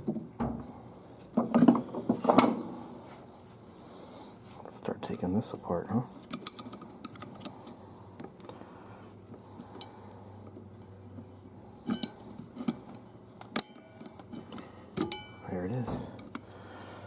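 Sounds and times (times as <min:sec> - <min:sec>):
metal parts clinking: 0:11.8 - 0:15.5.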